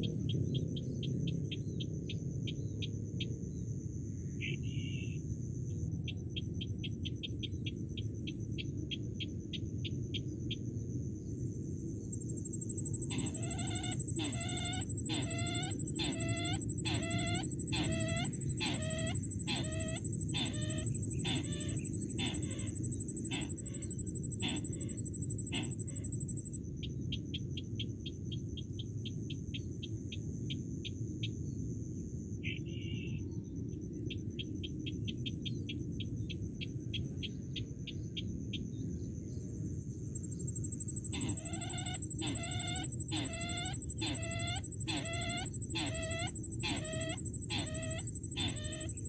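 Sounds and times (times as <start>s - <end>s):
low rumble of outdoor noise: 0.0s - 49.0s
steady high whine: 12.0s - 26.7s, 40.1s - 49.0s
bird dry ticking calls: 12.1s - 27.2s, 40.2s - 49.0s
bird clucking calls: 12.9s - 26.2s, 40.9s - 49.0s.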